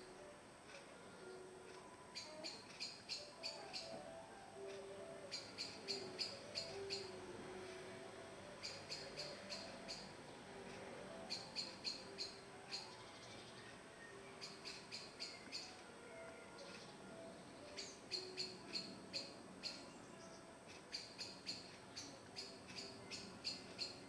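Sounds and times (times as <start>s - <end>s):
bird ticking calls: 2.0s - 4.0s, 4.6s - 7.2s, 8.6s - 10.2s, 11.2s - 15.8s, 17.6s - 19.9s, 20.7s - 24.0s.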